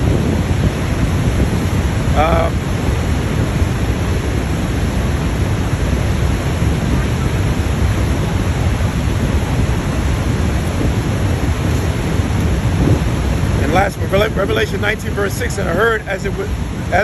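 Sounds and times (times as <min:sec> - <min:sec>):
waterfall rushing: 0:00.0 - 0:17.0.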